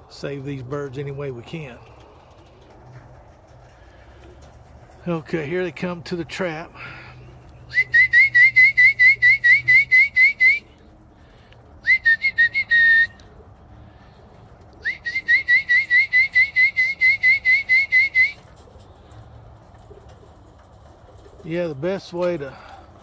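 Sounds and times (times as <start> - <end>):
whistle chirping notes: 7.7 - 10.7, 11.8 - 13.2, 14.8 - 18.4.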